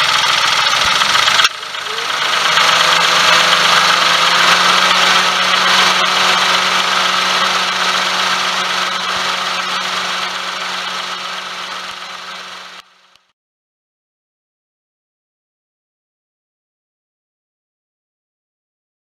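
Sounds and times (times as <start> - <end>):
car engine idling: 0.0 - 13.2
steady whirring bearing: 0.0 - 13.3.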